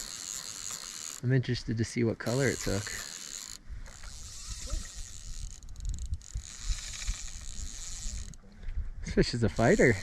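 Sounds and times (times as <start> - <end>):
fishing reel drag buzzing: 0.0 - 1.3, 2.3 - 8.4, 9.2 - 10.0
wind on microphone: 3.6 - 10.0.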